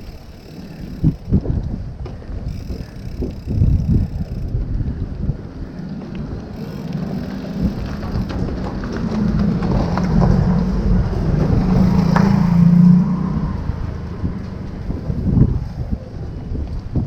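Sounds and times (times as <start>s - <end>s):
small clicks: 0.0s - 4.8s, 5.7s - 12.5s
road noise: 0.0s - 17.0s
wind buffeting microphone: 0.0s - 17.0s
motor vehicle passing: 2.7s - 16.6s.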